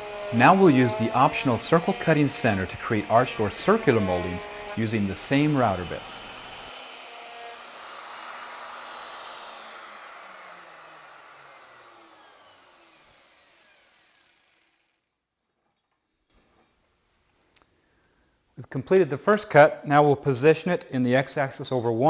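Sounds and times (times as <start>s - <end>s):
wood router spinning down: 0.0s - 15.0s.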